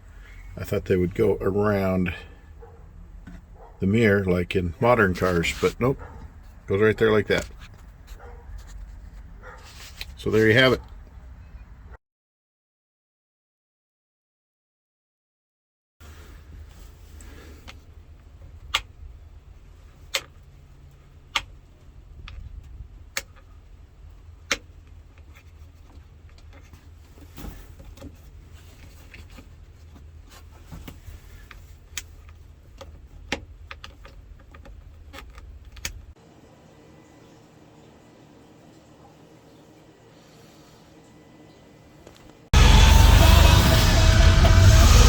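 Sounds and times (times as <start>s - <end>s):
low rumble: 42.6s - 45.0s.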